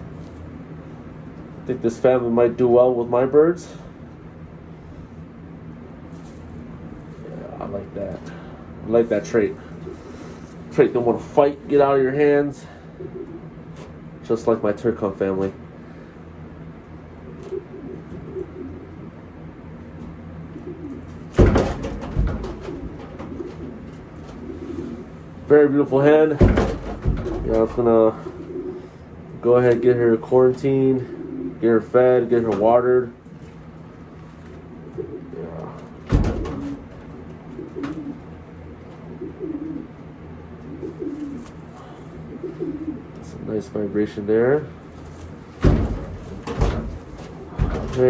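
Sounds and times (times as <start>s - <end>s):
steady low hum: 0.0s - 48.0s
pigeons cooing: 3.5s - 14.2s, 15.6s - 32.5s, 33.1s - 43.5s, 44.5s - 48.0s
wings fluttering: 20.0s - 25.4s, 33.3s - 43.2s, 44.8s - 48.0s
loud rustling: 44.7s - 48.0s.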